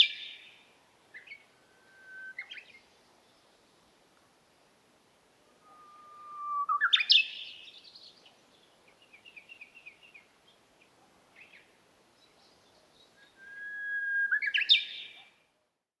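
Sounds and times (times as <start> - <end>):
songbird whistled song: 0.0 - 2.9, 5.6 - 10.3, 11.4 - 15.5
soft bird twittering: 5.6 - 7.7.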